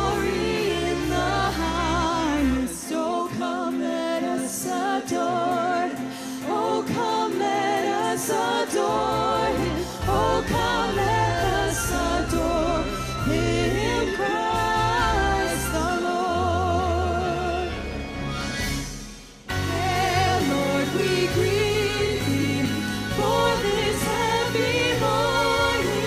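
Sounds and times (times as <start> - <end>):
bass: 0.0 - 2.8, 9.0 - 26.0
keyboard: 0.0 - 26.0
person singing: 19.5 - 26.0.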